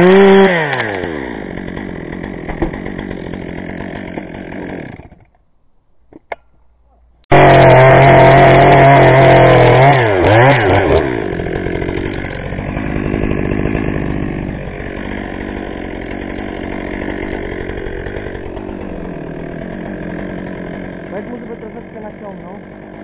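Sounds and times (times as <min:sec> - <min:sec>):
chainsaw revving and idling: 0:00.0 - 0:05.2, 0:07.3 - 0:23.0.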